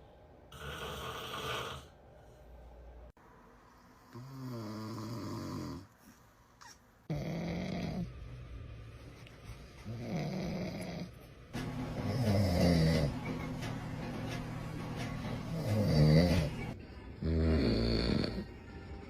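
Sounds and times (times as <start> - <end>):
man snoring: 0.5 - 2.0, 4.1 - 5.9, 7.1 - 8.1, 9.9 - 11.1, 12.0 - 13.2, 15.5 - 16.6, 17.2 - 18.5.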